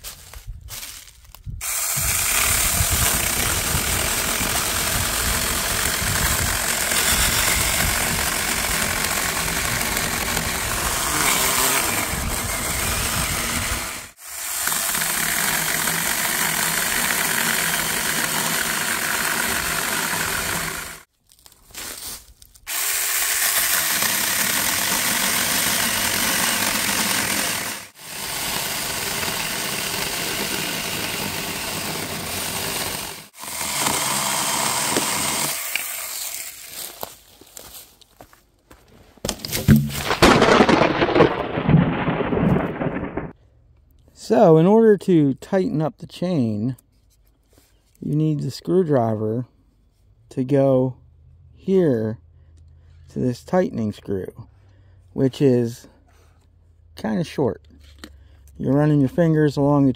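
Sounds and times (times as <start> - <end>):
electric chainsaw cutting wood: 1.6 - 21.1, 22.7 - 37.1.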